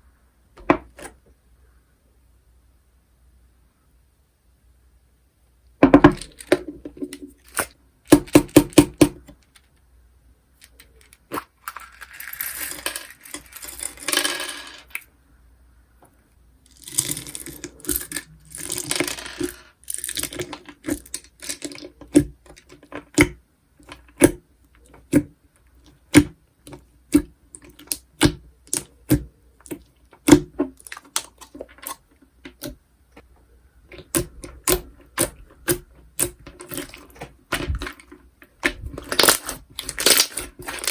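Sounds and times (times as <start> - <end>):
slime crinkling: 16.7 - 25.2, 26.0 - 33.3, 33.9 - 40.9
slime clicking and popping: 27.1 - 32.8, 33.9 - 37.9.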